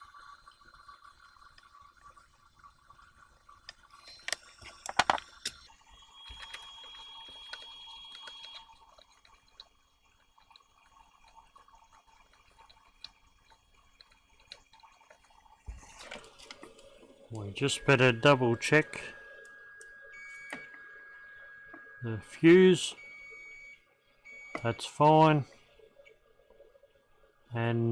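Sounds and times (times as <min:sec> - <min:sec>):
high tone with hiss: 0:17.4 - 0:23.0.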